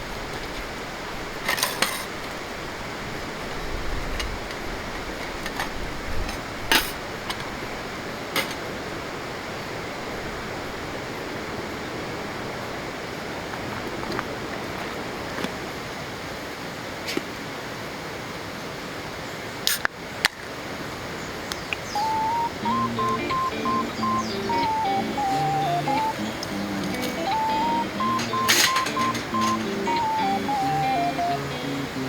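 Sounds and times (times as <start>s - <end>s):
utensils clinking and knocking: 1.5s - 2.1s, 8.4s - 8.6s, 26.9s - 31.0s.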